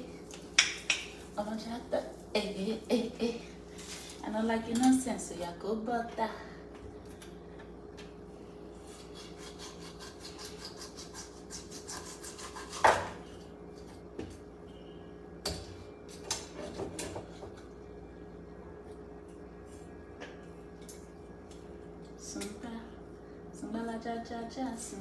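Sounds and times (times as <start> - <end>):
faint steady hum: 0.0 - 25.0
knife scraping on cutting board: 8.8 - 13.2.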